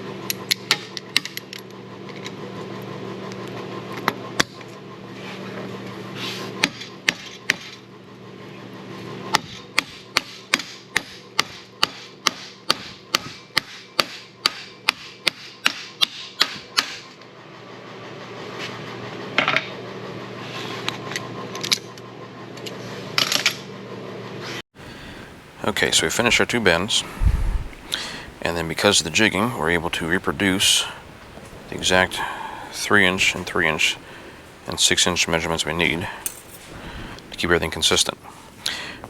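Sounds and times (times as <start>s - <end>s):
steady low hum: 0.0s - 39.0s
hammer striking hot steel: 9.3s - 17.0s.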